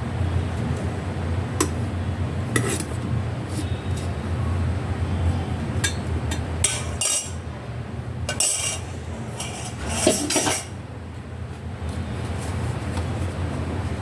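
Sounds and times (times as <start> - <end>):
metal utensils clinking on dishes: 5.8 - 7.4, 8.3 - 10.8.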